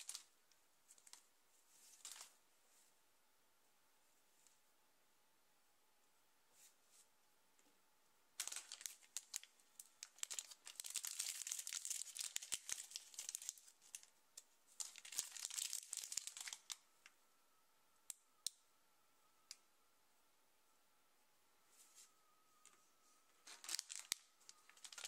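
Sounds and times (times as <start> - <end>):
wrapper crinkling and crackling: 0.0 - 0.3, 1.9 - 2.4, 8.4 - 14.1, 14.8 - 16.8, 23.4 - 25.0.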